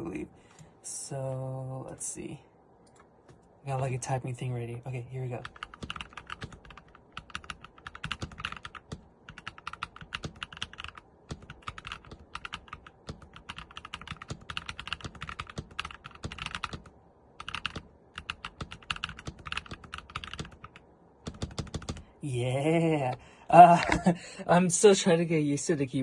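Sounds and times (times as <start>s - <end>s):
mechanical keyboard typing: 5.4s - 22.0s.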